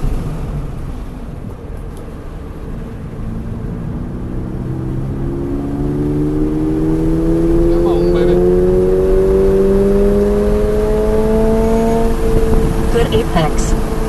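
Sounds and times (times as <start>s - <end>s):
car engine accelerating: 0.0s - 14.0s
wind noise on microphone: 10.0s - 14.0s.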